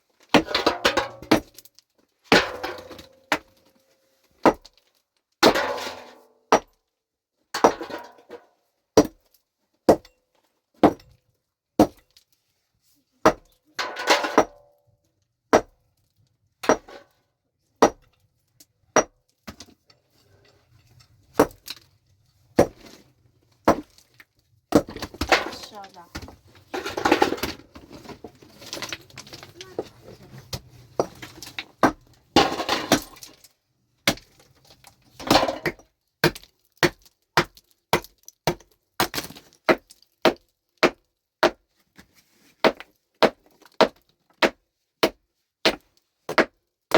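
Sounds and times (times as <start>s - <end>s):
pickaxe striking rock: 11.8s - 12.0s, 31.8s - 33.2s, 35.2s - 41.6s, 42.6s - 46.5s.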